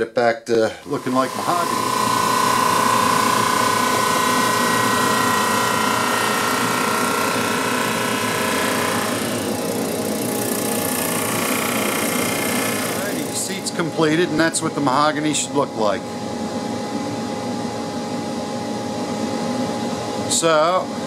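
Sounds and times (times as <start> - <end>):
whining tone: 0.8 - 13.8
drum sander running: 0.8 - 15.2.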